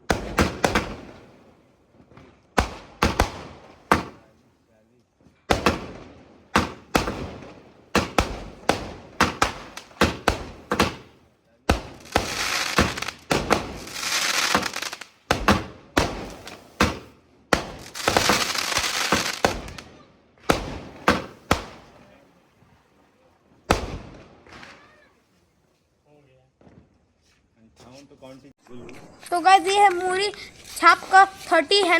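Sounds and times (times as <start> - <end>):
firework sharp bangs: 0.0 - 4.3, 5.4 - 22.1, 23.7 - 25.0
firework dense hissing: 8.0 - 19.8, 20.6 - 22.1, 29.3 - 31.9.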